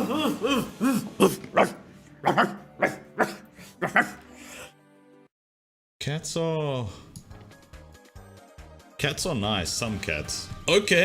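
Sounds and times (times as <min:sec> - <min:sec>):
dog barking: 0:01.2 - 0:04.2.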